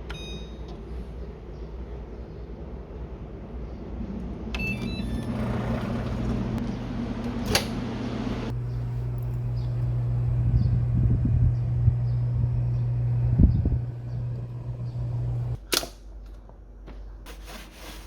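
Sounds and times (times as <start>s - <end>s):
appliance beeping: 0.0s - 0.9s, 4.5s - 15.6s
appliance humming: 3.8s - 15.9s.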